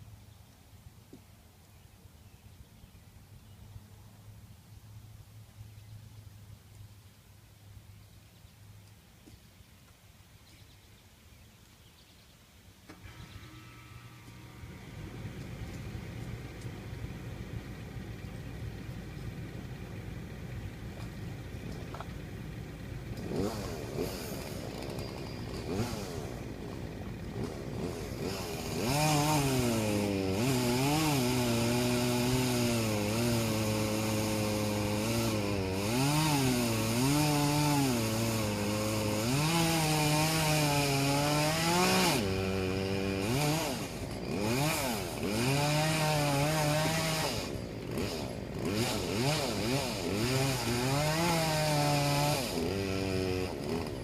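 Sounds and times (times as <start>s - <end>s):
chainsaw cutting wood: 12.9s - 54.0s.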